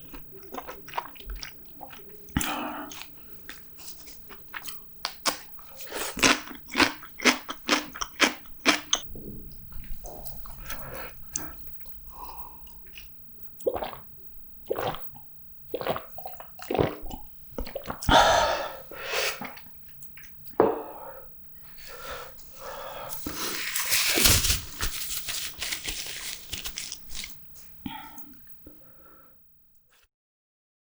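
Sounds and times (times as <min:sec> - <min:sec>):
wet chewing and smacking: 0:00.0 - 0:18.1.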